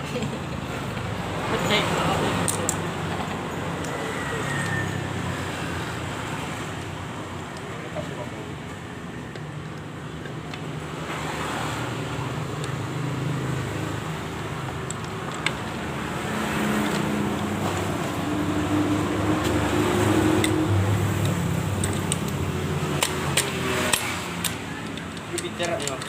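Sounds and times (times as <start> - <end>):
sharp clicks: 21.2 - 26.0.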